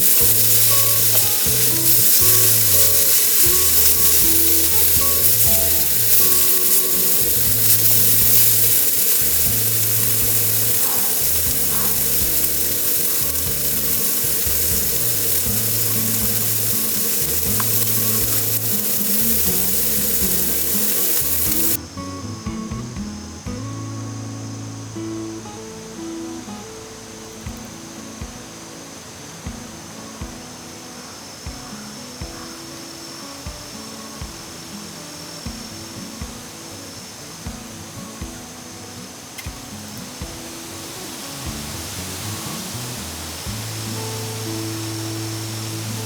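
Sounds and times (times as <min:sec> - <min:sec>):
food sizzling in frying pan: 0:00.0 - 0:21.8, 0:33.4 - 0:46.0
background music with bass line: 0:00.0 - 0:28.7, 0:39.5 - 0:46.0.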